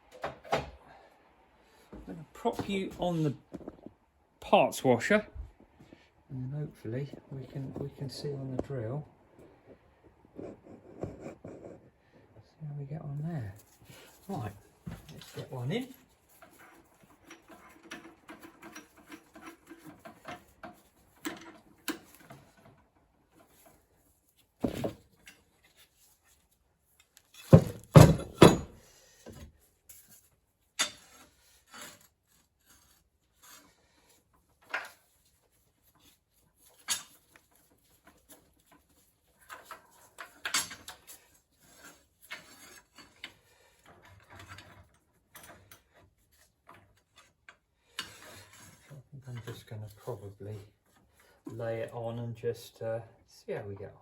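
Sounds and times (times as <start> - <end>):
metal tools clicking and knocking: 39.4 - 41.2.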